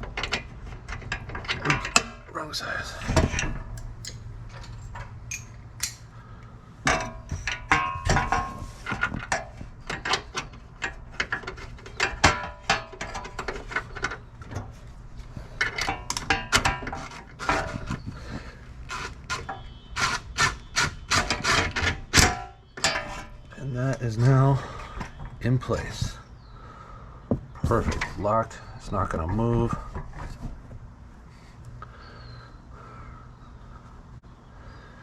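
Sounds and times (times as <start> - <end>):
metal hardware clinking: 0.0 - 2.3, 3.0 - 6.1, 6.8 - 14.8.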